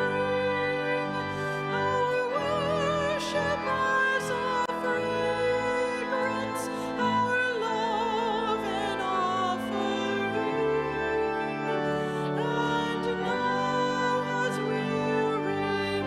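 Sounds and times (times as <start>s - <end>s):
classical singing voice: 0.0s - 16.0s
sustained instrumental chords: 0.0s - 16.0s.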